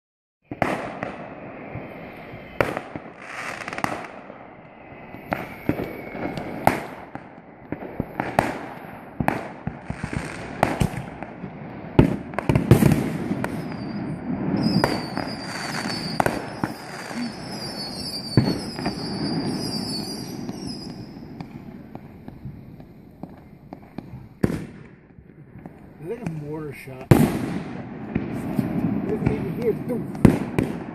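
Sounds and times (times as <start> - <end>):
firework whistles: 0.4 - 11.1, 12.8 - 24.2
firework bangs: 0.4 - 30.9.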